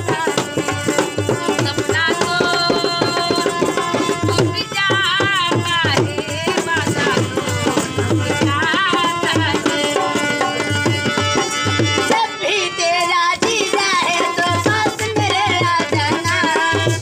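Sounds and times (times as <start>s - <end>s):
person singing: 0.0s - 11.4s
hand drum beat: 0.0s - 17.0s.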